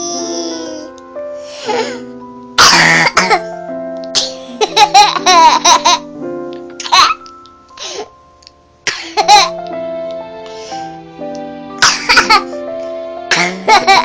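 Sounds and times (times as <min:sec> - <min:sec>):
background music melody: 0:00.0 - 0:14.0
baby coughing: 0:02.6 - 0:03.5, 0:08.9 - 0:09.6, 0:11.8 - 0:12.5, 0:13.3 - 0:14.0
baby giggling: 0:13.4 - 0:14.0.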